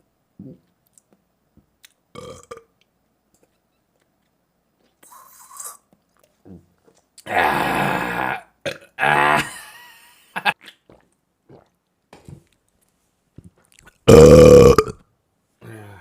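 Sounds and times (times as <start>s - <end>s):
person burping: 2.2s - 2.7s, 7.2s - 9.6s, 14.0s - 15.0s.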